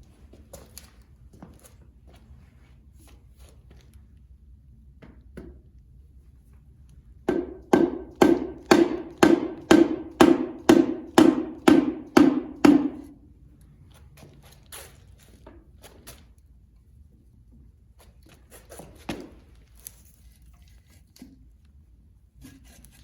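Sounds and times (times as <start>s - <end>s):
hammer striking metal: 7.3s - 13.2s.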